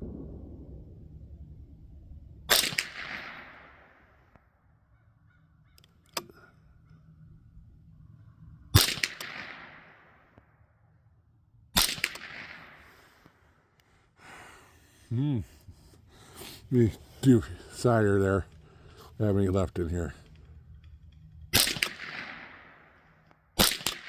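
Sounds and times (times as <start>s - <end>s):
rifle shots with echo: 0.0s - 4.4s, 8.8s - 10.4s, 11.8s - 13.4s, 19.5s - 24.0s.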